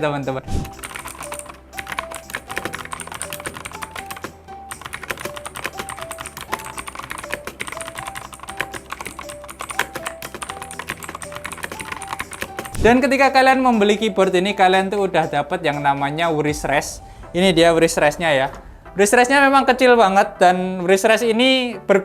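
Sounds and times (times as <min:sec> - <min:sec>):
simple background music: 0:00.0 - 0:22.0
mechanical keyboard typing: 0:00.5 - 0:13.0.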